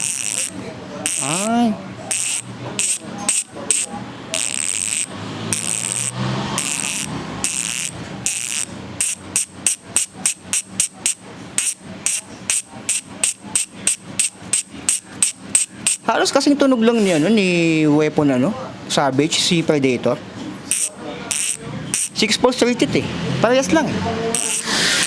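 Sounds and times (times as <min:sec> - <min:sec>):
bicycle hub ratcheting: 0:00.0 - 0:16.1, 0:20.7 - 0:22.4, 0:24.3 - 0:25.0.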